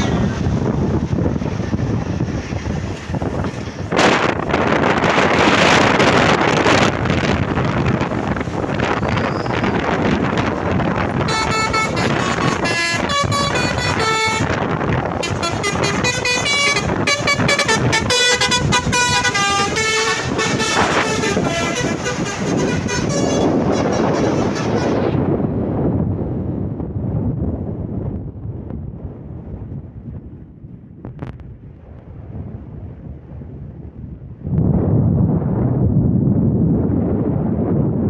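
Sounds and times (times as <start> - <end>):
bus engine rumble: 0.0 - 34.6
wind noise: 0.0 - 38.0
multi-tone bus horn tune: 4.0 - 25.3.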